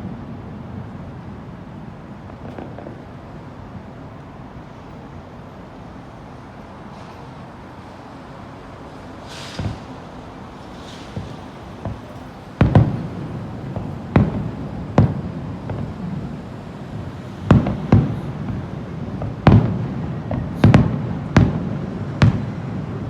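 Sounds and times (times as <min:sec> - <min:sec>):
fireworks booming: 0:00.0 - 0:04.9, 0:09.2 - 0:23.0.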